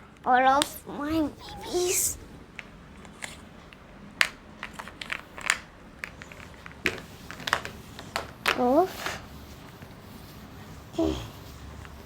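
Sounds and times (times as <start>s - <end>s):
faint room hum: 0.0s - 12.0s
small clicks and rustles: 2.5s - 10.5s.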